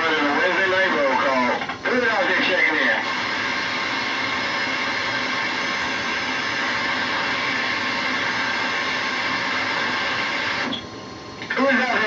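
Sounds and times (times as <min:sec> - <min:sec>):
radio static hiss: 0:00.0 - 0:12.0.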